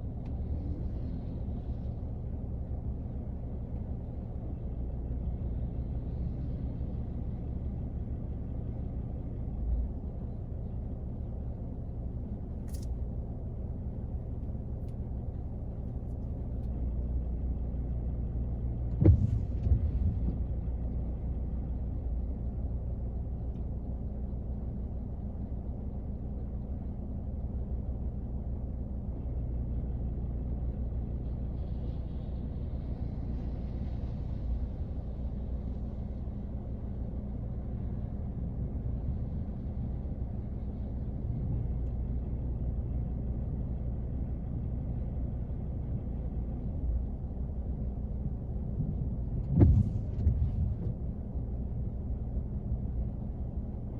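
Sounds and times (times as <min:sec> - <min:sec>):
low rumble inside car: 0:00.0 - 0:53.9
soft thump: 0:18.9 - 0:20.4, 0:49.4 - 0:50.9.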